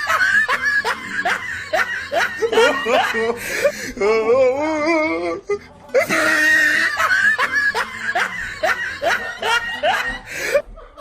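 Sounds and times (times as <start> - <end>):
high-pitched laughter: 0.0 - 3.4, 6.0 - 11.0.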